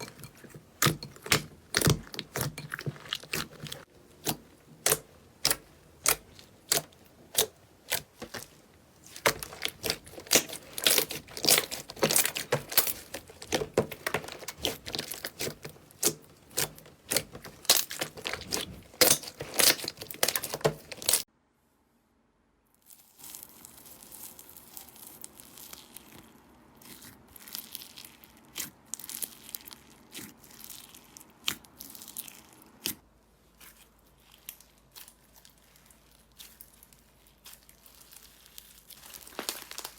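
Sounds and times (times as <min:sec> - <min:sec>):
slime crackling and popping: 0:00.7 - 0:21.3, 0:22.8 - 0:33.0, 0:33.6 - 0:39.9.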